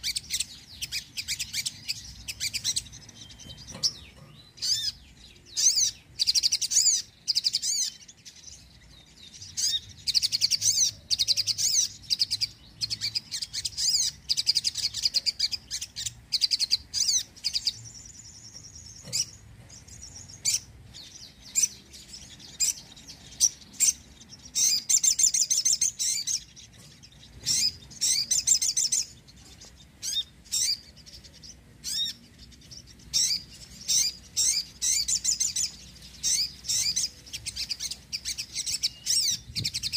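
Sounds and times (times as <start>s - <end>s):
sunbird twittering trills: 0.0s - 39.9s.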